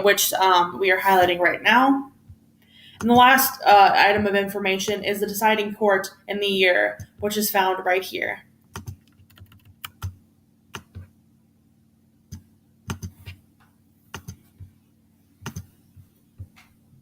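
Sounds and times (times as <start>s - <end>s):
computer keyboard keystrokes: 8.8s - 10.2s, 12.9s - 13.4s, 14.1s - 14.4s, 15.4s - 15.7s.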